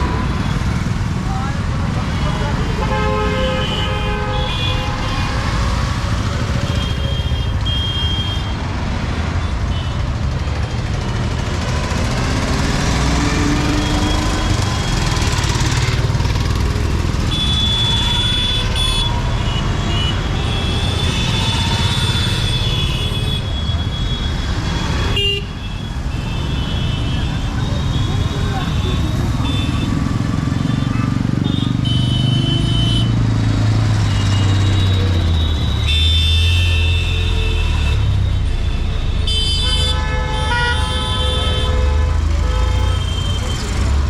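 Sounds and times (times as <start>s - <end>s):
traffic engines rumbling: 0.0s - 44.0s
engine revving: 11.5s - 17.4s.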